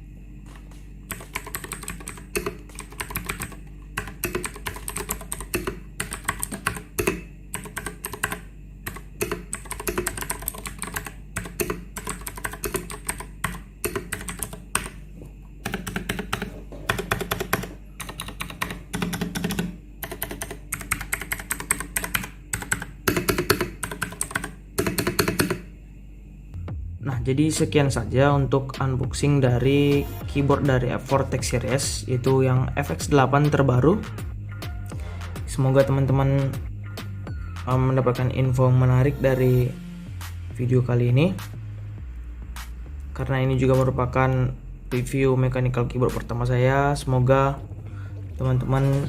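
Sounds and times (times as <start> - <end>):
clicky mechanical keyboard typing: 1.1 - 15.0, 15.6 - 25.6.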